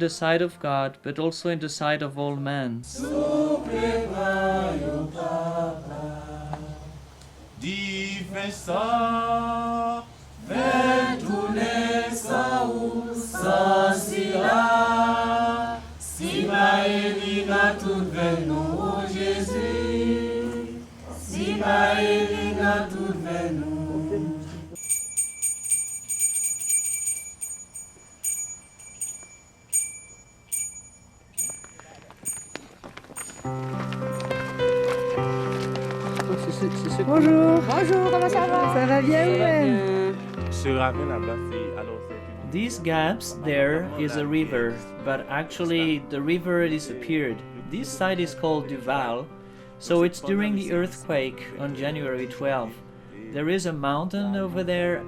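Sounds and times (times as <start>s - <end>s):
voices singing a chant: 2.9s - 24.8s.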